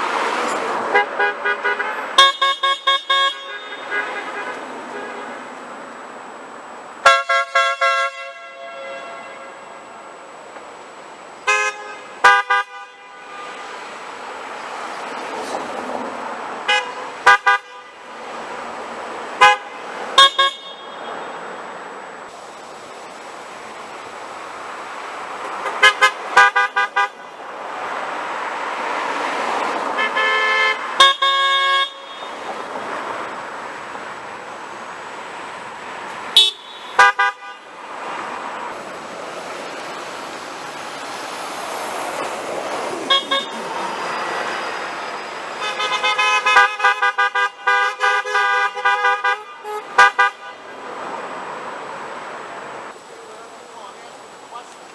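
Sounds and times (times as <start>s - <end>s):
rush of passing cars: 0.0s - 2.4s, 3.2s - 54.9s
car horns honking: 0.8s - 5.5s, 7.0s - 9.9s, 11.4s - 14.2s, 16.6s - 18.2s, 19.3s - 21.8s, 25.4s - 27.5s, 29.8s - 33.4s, 36.3s - 38.1s, 42.8s - 50.9s.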